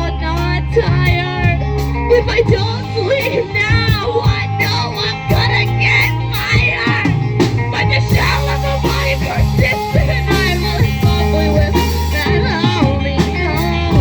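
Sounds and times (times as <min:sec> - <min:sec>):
bass line: 0:00.0 - 0:14.0
electric guitar: 0:00.0 - 0:14.0
drums beating: 0:06.4 - 0:14.0.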